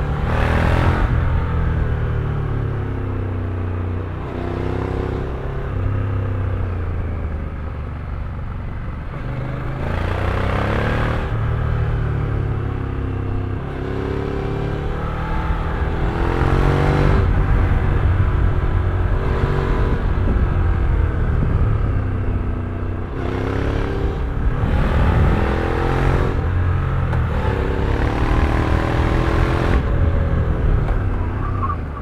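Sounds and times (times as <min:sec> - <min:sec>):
vehicle engine revving: 0:00.0 - 0:01.5, 0:09.1 - 0:12.6, 0:13.6 - 0:32.0.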